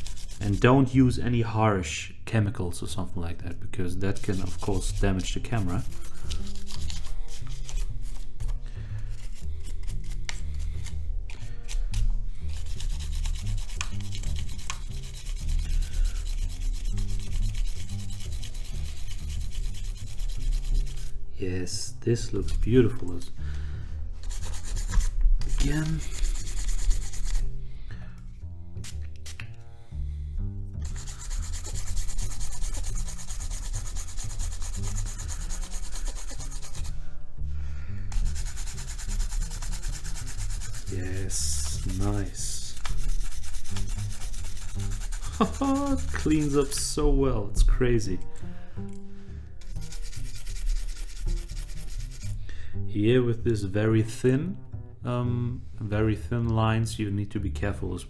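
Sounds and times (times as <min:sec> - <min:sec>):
rubbing strokes on camera body: 0:00.0 - 0:00.8, 0:04.0 - 0:21.2, 0:24.2 - 0:27.6, 0:30.8 - 0:37.0, 0:38.1 - 0:47.0, 0:49.6 - 0:52.4
background music with bass line: 0:04.3 - 0:56.4
scrubbing camera body: 0:24.2 - 0:27.4, 0:38.2 - 0:46.8.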